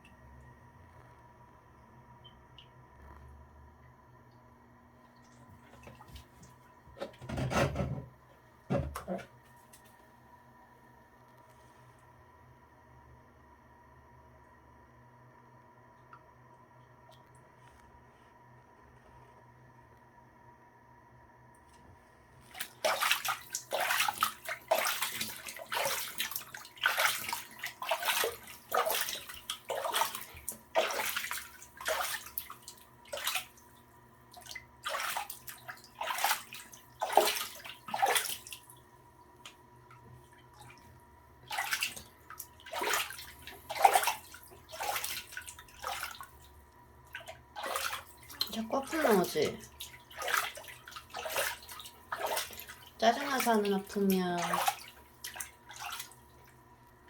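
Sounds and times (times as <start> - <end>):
bath water splashing: 5.0 - 8.0, 22.4 - 57.0.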